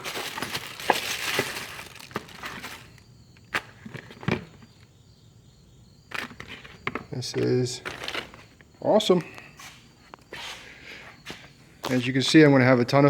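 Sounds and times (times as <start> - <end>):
packaging crinkling and rustling: 0.0 - 4.7, 6.1 - 8.5.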